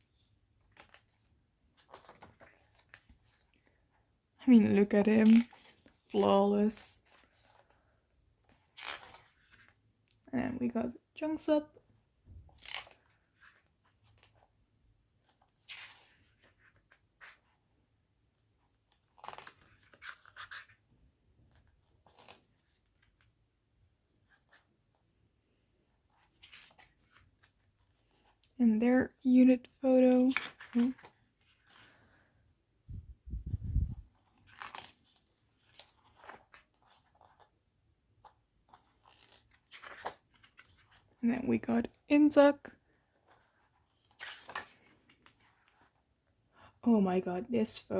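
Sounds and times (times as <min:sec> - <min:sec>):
photobook pages turning: 0:00.0 - 0:03.9, 0:05.2 - 0:06.2, 0:07.0 - 0:09.9, 0:12.5 - 0:14.6, 0:15.2 - 0:17.6, 0:18.6 - 0:23.4, 0:24.2 - 0:25.1, 0:25.9 - 0:28.6, 0:30.1 - 0:32.2, 0:33.5 - 0:41.2, 0:42.8 - 0:46.1.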